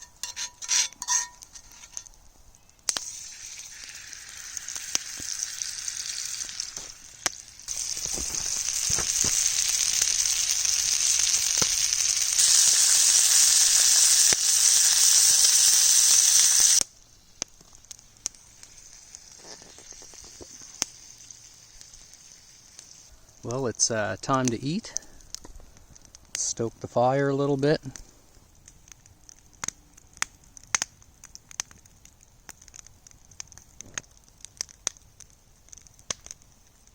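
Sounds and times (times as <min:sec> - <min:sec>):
vegetables sizzling in a pan: 0:02.9 - 0:17.4, 0:18.1 - 0:23.1
faint clicks and crackles: 0:24.2 - 0:27.0, 0:27.8 - 0:36.9.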